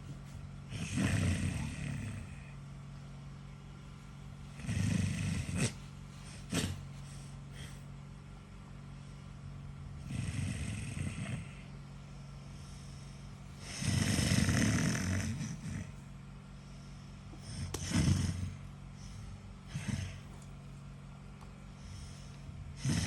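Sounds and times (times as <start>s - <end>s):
man snoring loudly: 0.7s - 2.6s, 4.6s - 5.8s, 10.0s - 11.7s, 13.6s - 16.0s, 17.4s - 20.2s, 22.8s - 23.0s.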